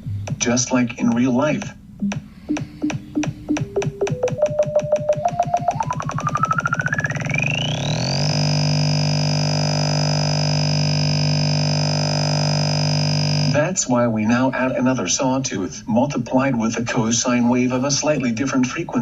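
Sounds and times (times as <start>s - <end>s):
repeating click speeding into buzz: 2.0s - 13.4s
tone gliding to high whistle: 4.4s - 8.6s.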